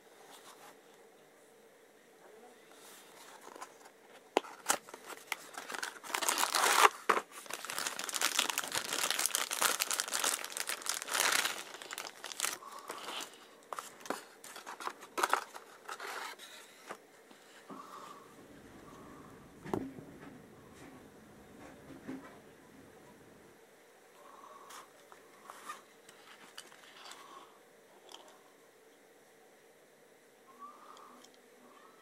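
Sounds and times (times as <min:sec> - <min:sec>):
packaging crinkling and tearing: 0:04.4 - 0:16.2.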